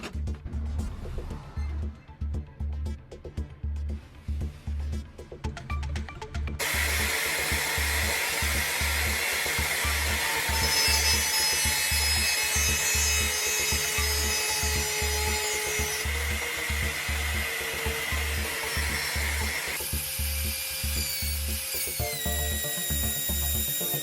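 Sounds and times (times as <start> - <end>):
background music with low beat: 0.0 - 24.0
power tool motor whining: 6.6 - 24.0.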